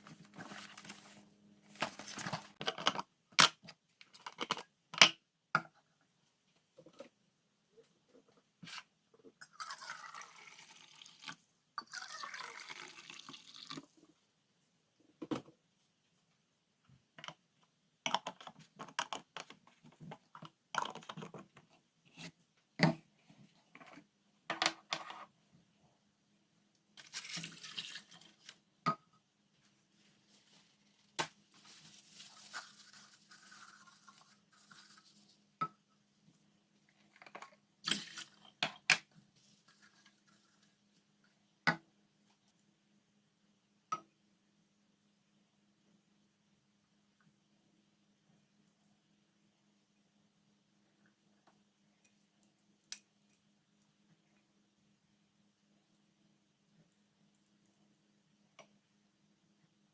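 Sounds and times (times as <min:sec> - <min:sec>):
rustling or scraping: 0:00.0 - 0:02.6, 0:27.0 - 0:28.6, 0:29.6 - 0:35.4
faint steady hum: 0:00.0 - 0:59.9.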